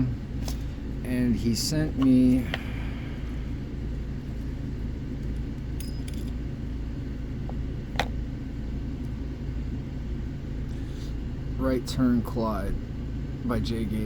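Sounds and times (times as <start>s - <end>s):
steady low rumble: 0.0s - 14.0s.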